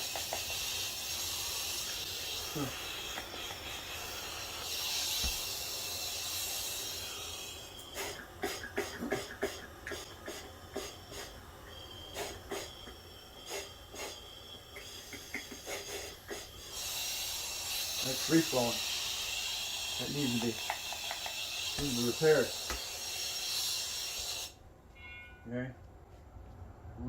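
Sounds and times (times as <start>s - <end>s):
hiss of escaping air: 0.0s - 24.6s
faint high whistle: 24.2s - 25.5s.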